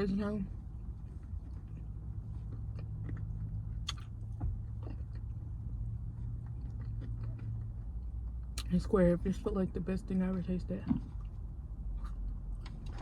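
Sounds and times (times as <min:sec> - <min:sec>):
steady low hum: 0:00.0 - 0:13.0
chewing: 0:00.8 - 0:08.7, 0:11.0 - 0:13.0
mouth clicks and smacks: 0:02.5 - 0:04.2.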